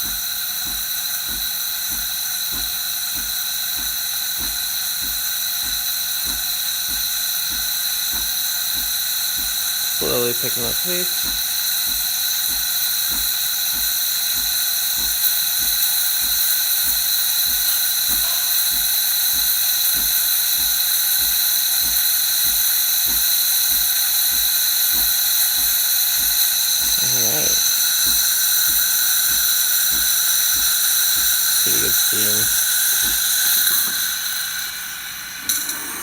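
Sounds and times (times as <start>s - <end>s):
steam wand hissing: 0.0s - 36.0s.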